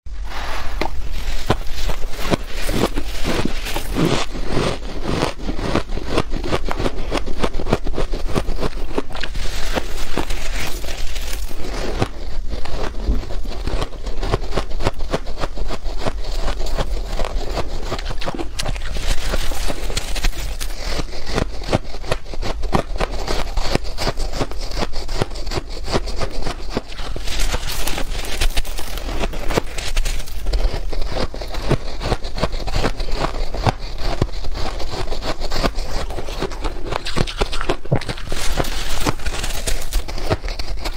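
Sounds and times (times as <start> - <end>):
ice being crunched: 0.2 - 40.9.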